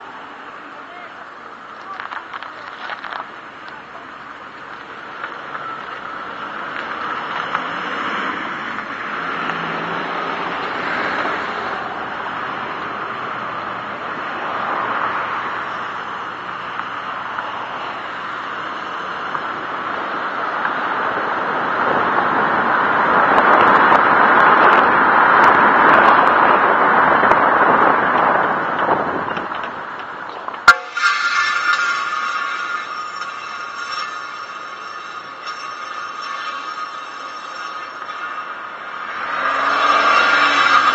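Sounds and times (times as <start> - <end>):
wheel scraping and rasping: 1.6 - 12.2, 27.2 - 40.9
faint crackles: 1.7 - 7.6
wheel scraping hiss: 30.8 - 40.9.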